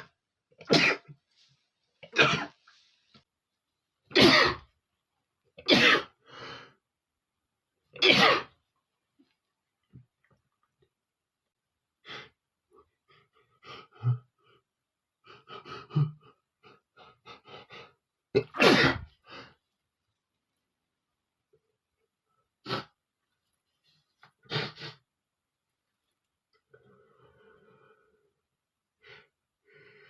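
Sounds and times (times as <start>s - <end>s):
man sneezing loudly: 0.6s - 1.1s, 4.1s - 4.7s, 8.0s - 8.5s, 18.4s - 19.1s.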